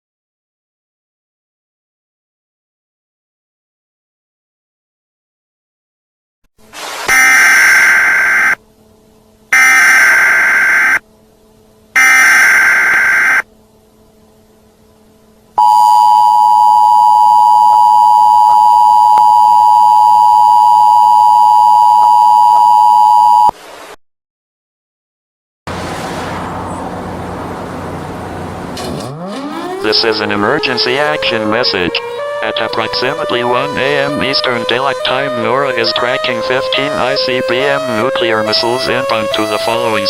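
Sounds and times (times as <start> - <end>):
harsh digital data screech: 7.1 - 8.6, 9.6 - 11.0, 12.0 - 13.4
two-tone attention signal: 7.1 - 8.6, 9.5 - 11.0, 12.0 - 13.4, 15.6 - 23.5.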